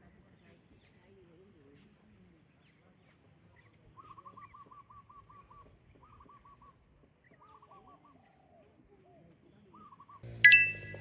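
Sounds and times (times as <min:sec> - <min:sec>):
bird calls repeated clear notes: 0:09.8 - 0:11.0.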